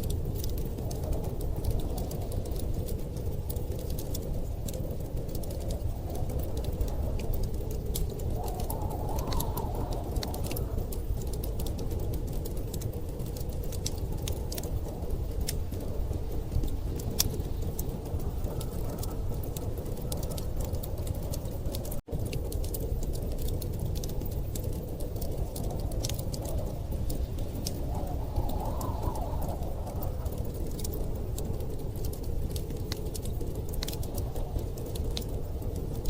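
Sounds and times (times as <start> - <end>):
low rumble of storm wind: 0.0 - 36.0
wood fire crackling and popping: 0.0 - 36.0.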